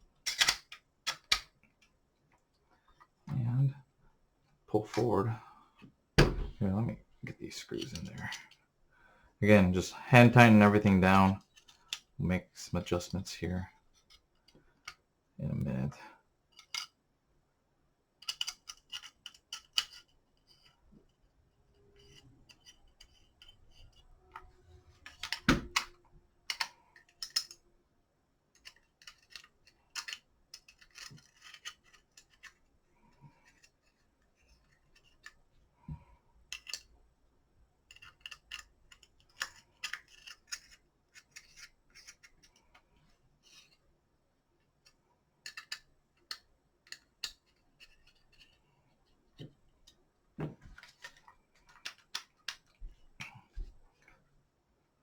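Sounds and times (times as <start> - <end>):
clicks and scrapes of gun parts: 0.2 - 2.0, 7.3 - 8.7, 10.4 - 12.2, 13.8 - 15.0, 16.5 - 17.0, 18.2 - 27.7, 28.5 - 37.0, 37.8 - 43.9, 44.6 - 54.2
sharp knock: 6.2 - 6.6.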